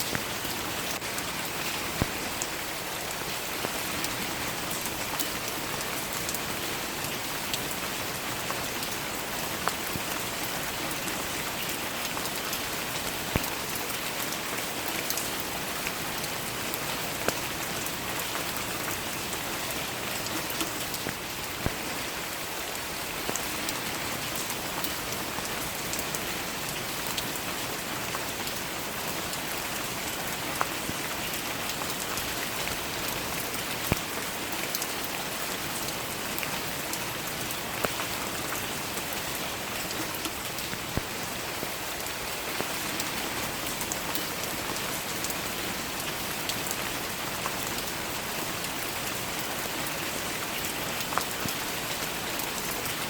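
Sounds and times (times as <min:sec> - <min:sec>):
steady rain hiss: 0:00.0 - 0:53.0.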